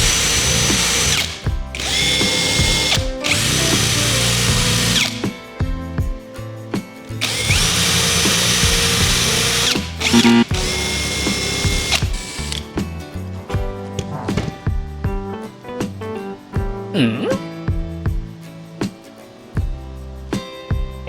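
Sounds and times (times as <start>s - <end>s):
power tool motor whine: 0.0s - 5.4s, 7.2s - 12.7s
handling clicks and knocks: 13.5s - 14.9s.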